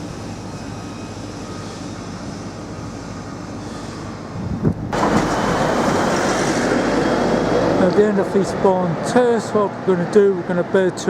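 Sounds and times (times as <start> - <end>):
city street traffic rumble: 0.0 - 11.0
loud rushing noise: 4.3 - 9.2.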